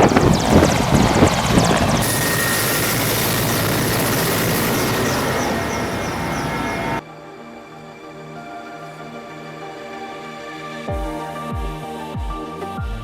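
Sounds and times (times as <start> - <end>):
bright rush of noise: 0.0 - 7.0
helicopter rotor chopping: 0.0 - 7.0.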